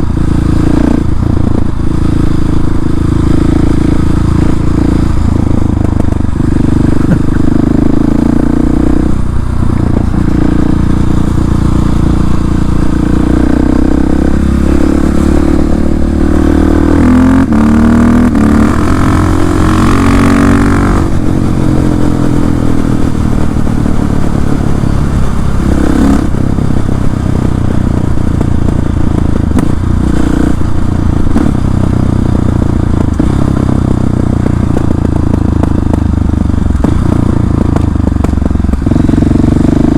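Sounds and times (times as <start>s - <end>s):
motorcycle engine revving loud: 0.0s - 39.9s.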